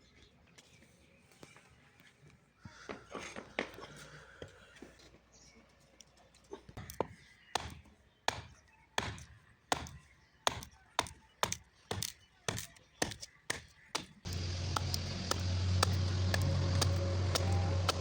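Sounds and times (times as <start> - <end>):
machine humming: 14.3 - 18.0.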